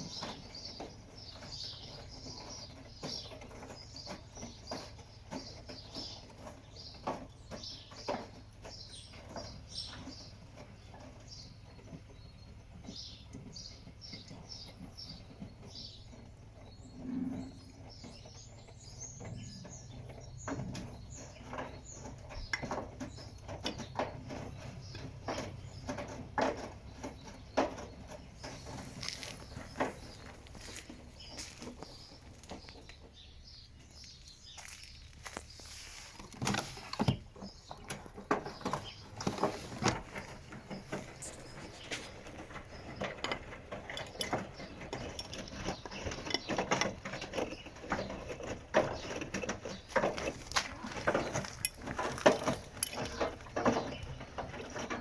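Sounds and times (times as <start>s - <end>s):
laundry tumbling in washing machine: 35.8s - 55.0s.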